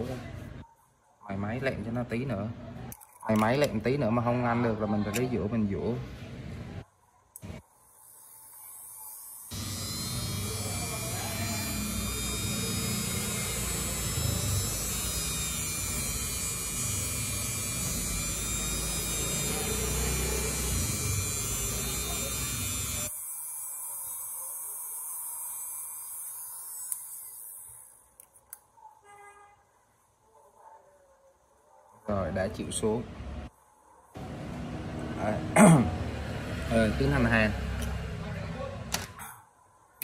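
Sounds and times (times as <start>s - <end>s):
rotary grinder grinding metal: 7.4s - 28.0s
faint motor whir: 7.4s - 28.1s.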